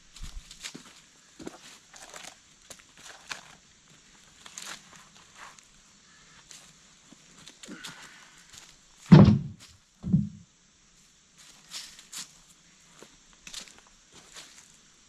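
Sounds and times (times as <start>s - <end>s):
heavy wooden log thuds: 9.1s - 10.4s.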